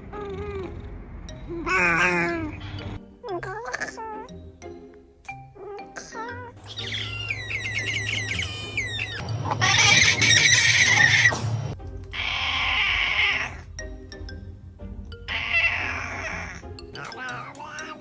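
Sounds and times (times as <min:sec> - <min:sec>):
background music: 0:00.0 - 0:18.0
cat chirping and crying: 0:05.6 - 0:11.4, 0:12.1 - 0:13.7, 0:15.3 - 0:18.0.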